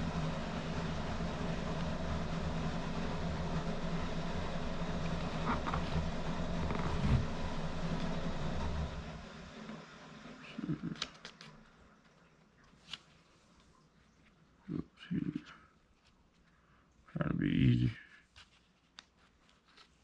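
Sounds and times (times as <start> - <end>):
low mechanical rumble with hum: 0.0 - 11.1.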